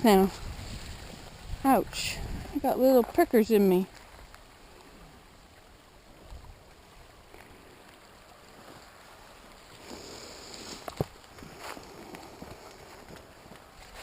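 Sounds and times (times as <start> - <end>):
brush rustling: 9.6 - 14.0.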